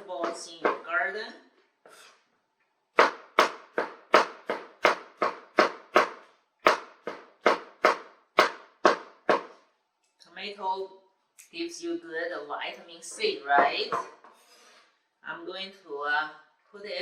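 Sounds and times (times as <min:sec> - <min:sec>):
knife chopping tomato: 0:03.0 - 0:09.6.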